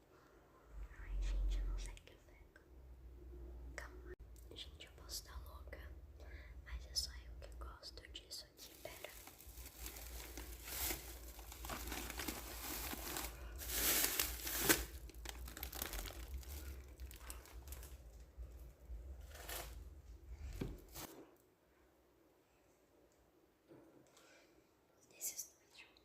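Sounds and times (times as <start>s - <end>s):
low steady hum: 0.0s - 20.9s
plastic packaging crinkling and tearing: 8.6s - 18.2s, 19.2s - 19.8s.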